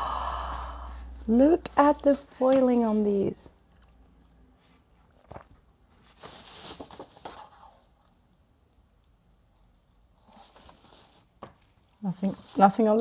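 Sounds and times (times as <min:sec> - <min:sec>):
book cover rustling: 0:04.7 - 0:08.2, 0:10.0 - 0:13.0.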